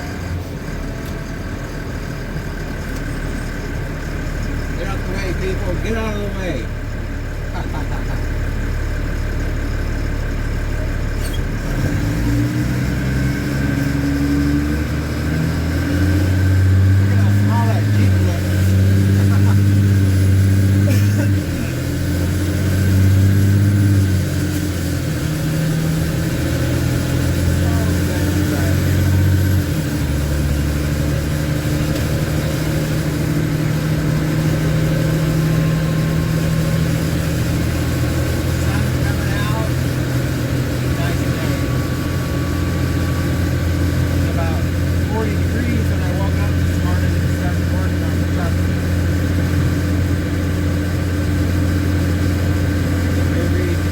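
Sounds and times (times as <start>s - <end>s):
truck diesel engine accelerating: 0.0s - 53.9s.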